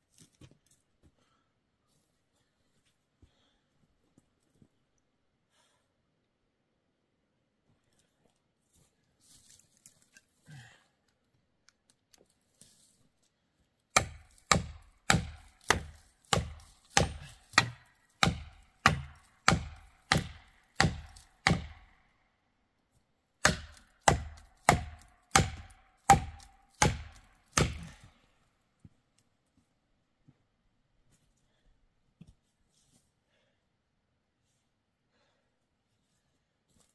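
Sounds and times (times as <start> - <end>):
hammer blows on wedges: 13.9 - 21.8.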